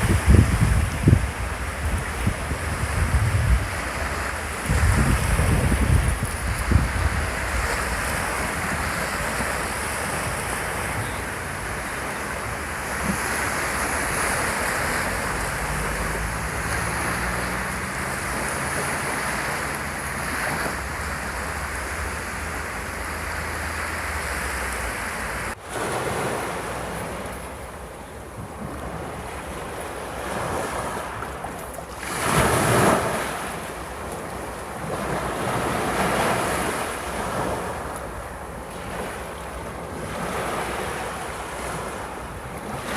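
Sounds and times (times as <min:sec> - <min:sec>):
ocean waves breaking on beach: 0:00.0 - 0:42.9.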